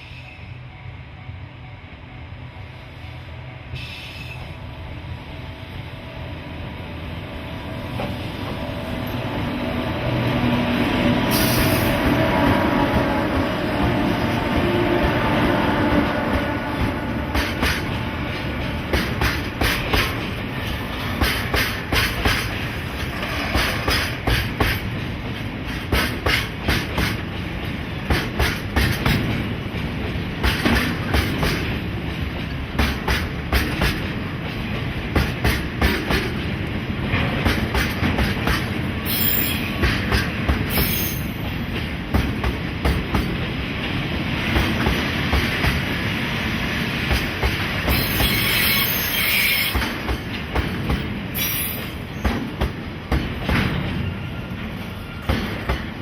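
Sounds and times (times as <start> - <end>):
freight train rumble: 0.0 - 56.0
train wheels clicking over rail joints: 16.3 - 56.0
high-pitched wheel squeals: 47.9 - 49.8.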